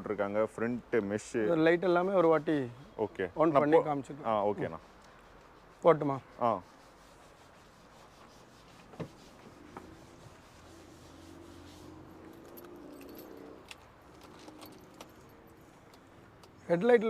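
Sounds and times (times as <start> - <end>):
keys jingling: 11.9 - 16.4.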